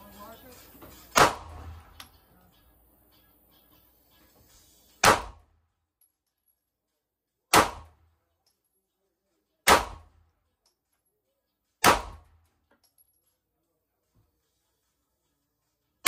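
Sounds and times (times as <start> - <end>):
pistol shots with echo: 1.1 - 2.1, 5.0 - 5.5, 7.5 - 8.0, 9.6 - 10.2, 11.8 - 12.4.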